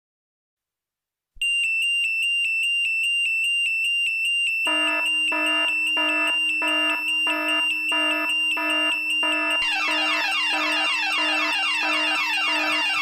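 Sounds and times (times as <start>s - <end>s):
high beeping alarm tone: 1.4s - 13.0s
lower pulsing beep: 4.7s - 13.0s
falling electronic pattern: 9.6s - 13.0s.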